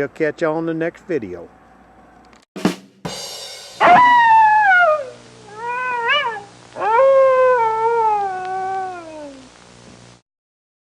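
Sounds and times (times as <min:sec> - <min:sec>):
cat meowing: 0:03.8 - 0:09.5.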